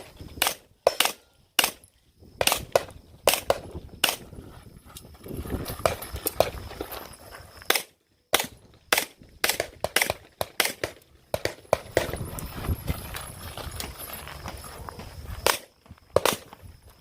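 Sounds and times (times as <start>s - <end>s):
pistol shots: 0.4s - 1.8s, 7.7s - 12.1s.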